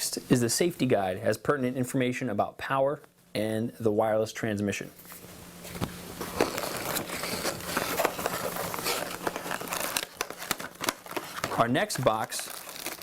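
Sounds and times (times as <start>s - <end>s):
paper and packaging rustling: 5.0s - 13.0s.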